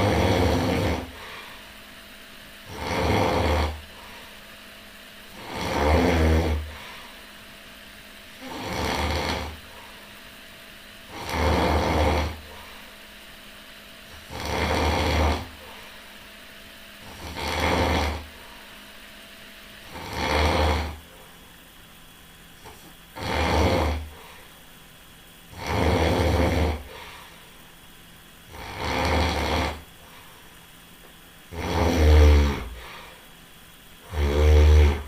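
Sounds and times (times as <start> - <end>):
person snoring: 0.0 - 1.5, 2.6 - 4.2, 5.3 - 7.1, 8.4 - 9.9, 11.1 - 12.8, 14.1 - 15.9, 17.0 - 18.5, 19.8 - 21.2, 23.2 - 24.5, 25.5 - 27.4, 28.5 - 29.9, 31.5 - 33.3, 34.0 - 35.0.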